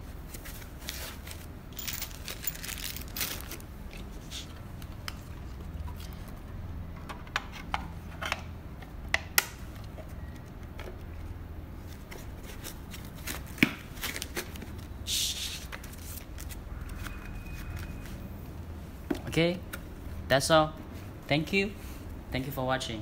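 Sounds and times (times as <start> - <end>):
packaging rustle: 0.3 - 4.5.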